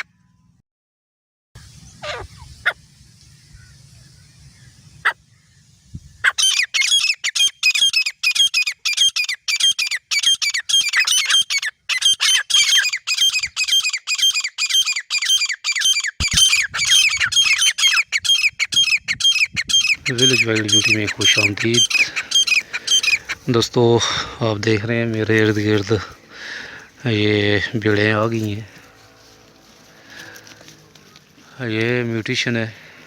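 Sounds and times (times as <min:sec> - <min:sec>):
francolin shrill calls: 0:01.6 - 0:23.5.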